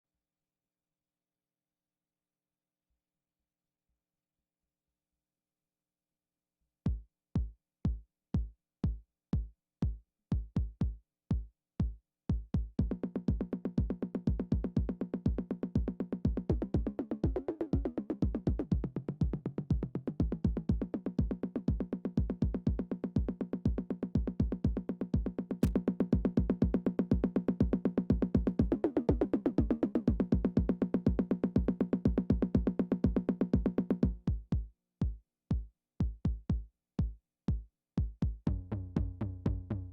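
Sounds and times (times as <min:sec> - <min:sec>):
bass drum thumps: 0:22.2 - 0:26.5, 0:30.1 - 0:39.9.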